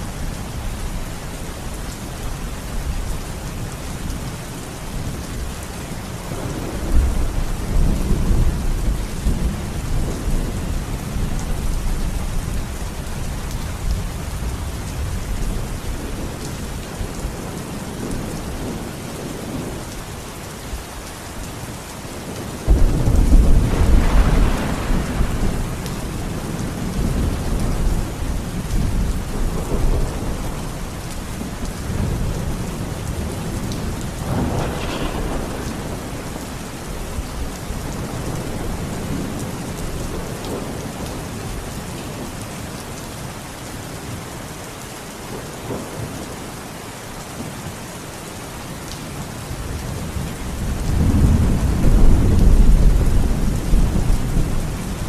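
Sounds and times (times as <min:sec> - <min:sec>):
steady rain: 0:00.0 - 0:55.0
rolling thunder: 0:06.2 - 0:12.8, 0:22.7 - 0:41.4, 0:49.7 - 0:55.0.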